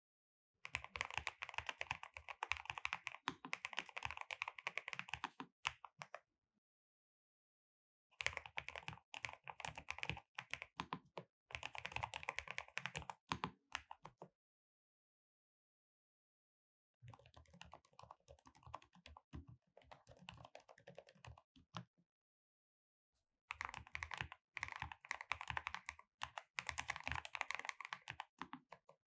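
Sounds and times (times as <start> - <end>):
fast keyboard typing: 0.7 - 5.4, 8.2 - 10.8, 11.5 - 13.2, 17.1 - 19.2, 19.8 - 21.4, 23.5 - 28.8.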